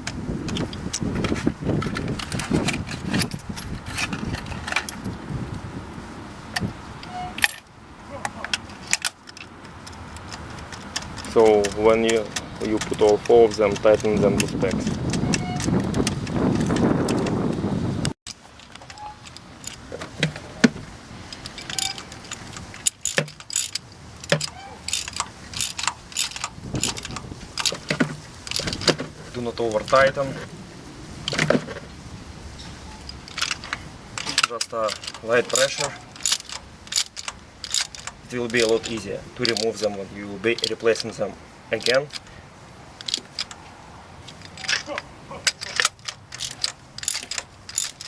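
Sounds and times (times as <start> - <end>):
rough handling noise: 0.0 - 48.0
metallic clicks of socket wrench: 8.5 - 17.4, 21.3 - 28.9, 33.1 - 39.9, 43.0 - 48.0.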